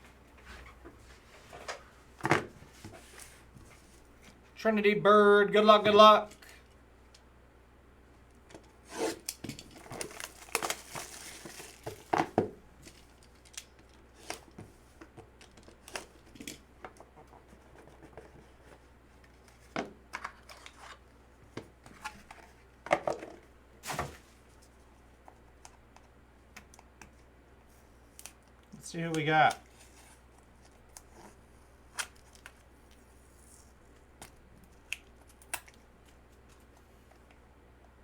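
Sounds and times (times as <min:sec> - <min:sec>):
packaging tearing and crinkling: 0:08.9 - 0:12.1.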